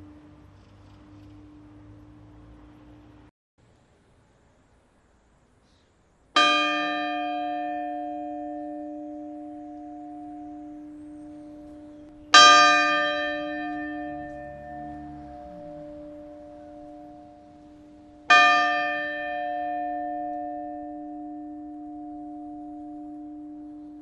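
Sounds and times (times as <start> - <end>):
church bell ringing: 6.4 - 24.0.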